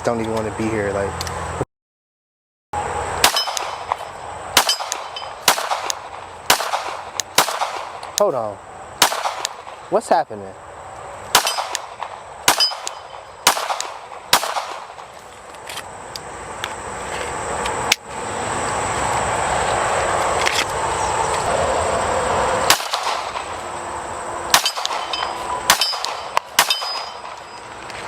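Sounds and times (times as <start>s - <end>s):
steady rushing noise: 2.8s - 15.6s, 16.3s - 28.0s
gunshots: 3.2s - 8.0s, 9.0s - 9.8s, 11.3s - 15.1s, 22.7s - 23.5s, 24.5s - 27.5s.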